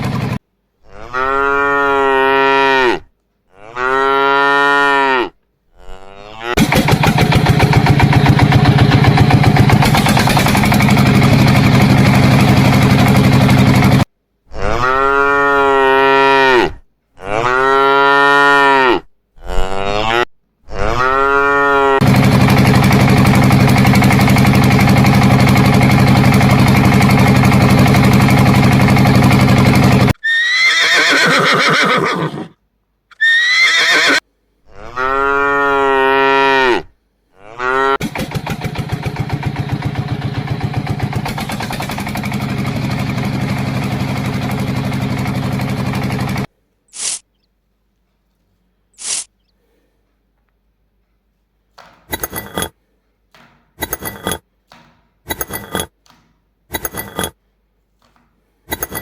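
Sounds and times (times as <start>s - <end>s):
engine running: 0.0s - 0.4s, 6.6s - 14.1s, 22.0s - 30.2s, 38.0s - 46.5s
cow mooing: 0.8s - 6.6s, 14.5s - 22.1s, 33.8s - 38.0s.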